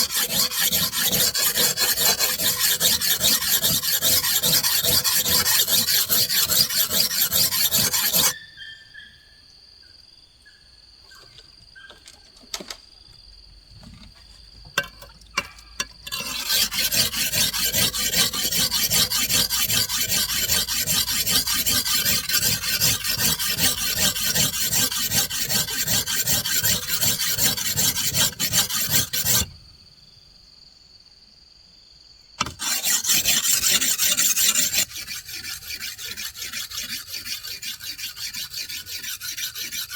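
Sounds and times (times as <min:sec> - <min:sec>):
hand tool rasping across wood: 0:00.0 - 0:08.4, 0:15.4 - 0:29.5, 0:32.4 - 0:39.9.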